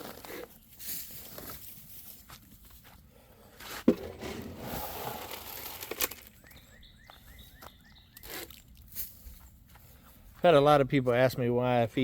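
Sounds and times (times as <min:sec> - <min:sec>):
footsteps: 0:00.8 - 0:05.8, 0:09.0 - 0:11.3.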